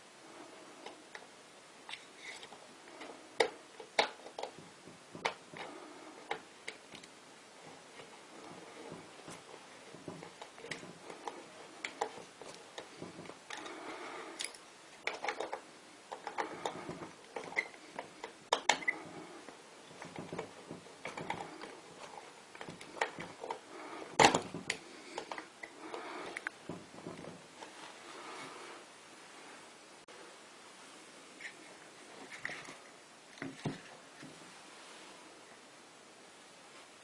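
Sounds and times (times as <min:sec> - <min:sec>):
small parts clicking and scraping: 0:01.9 - 0:04.6, 0:05.2 - 0:26.7.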